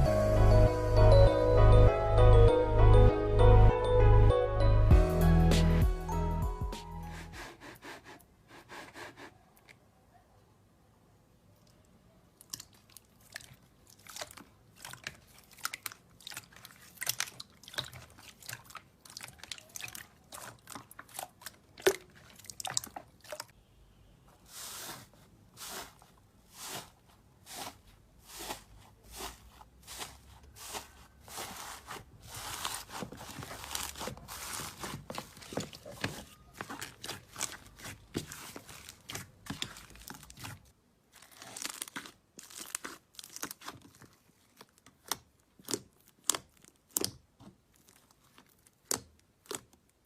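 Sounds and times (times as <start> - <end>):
slime crackling and popping: 12.4 - 22.9, 29.2 - 50.0.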